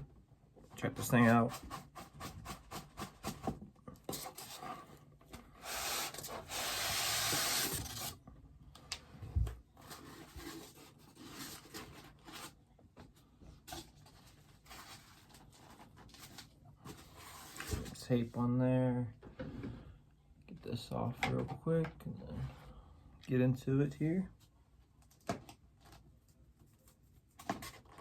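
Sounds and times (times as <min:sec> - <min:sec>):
cardboard scraping rub: 0:04.2 - 0:08.2, 0:09.8 - 0:12.6.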